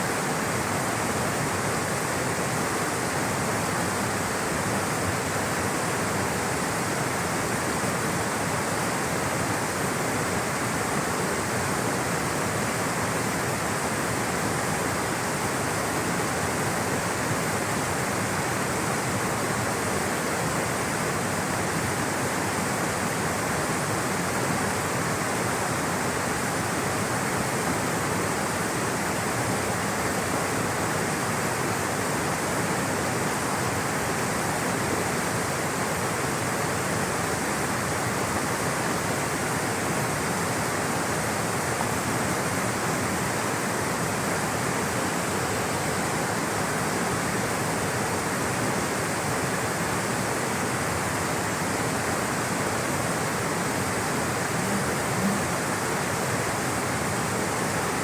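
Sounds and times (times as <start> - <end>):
water rushing in a stream: 0.0 - 58.0.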